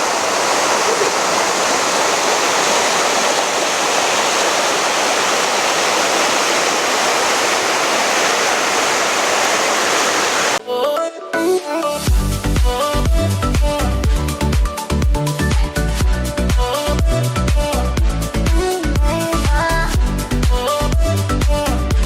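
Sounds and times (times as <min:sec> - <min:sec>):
river water rushing: 0:00.0 - 0:10.6
music with a beat: 0:12.0 - 0:22.0.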